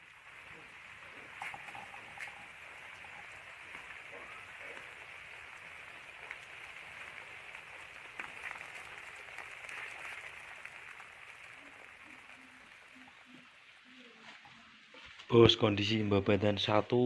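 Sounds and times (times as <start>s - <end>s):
small ticks: 0.3s - 13.6s.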